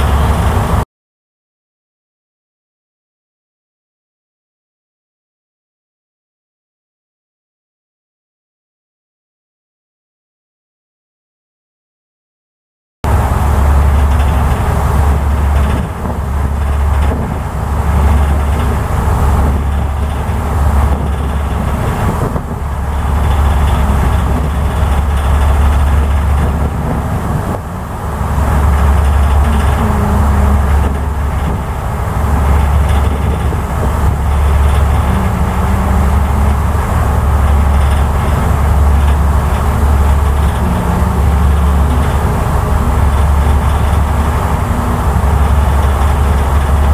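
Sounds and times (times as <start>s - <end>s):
ferry engine rumble: 0.0s - 0.8s, 13.0s - 46.9s.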